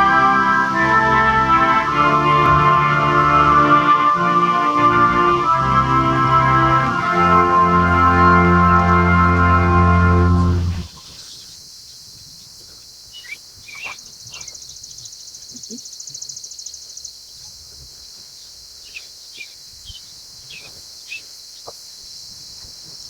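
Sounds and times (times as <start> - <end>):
rapid high pulsing buzz: 0.0 - 11.0
birds chirping: 0.0 - 12.0, 13.1 - 16.7
steady high hiss: 0.0 - 14.0.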